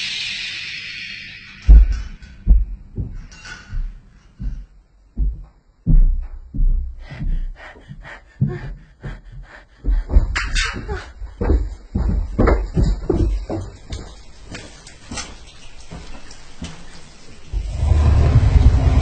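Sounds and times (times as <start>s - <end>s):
sharp knocks: 1.6s - 4.0s
deep irregular thuds: 1.7s - 13.8s.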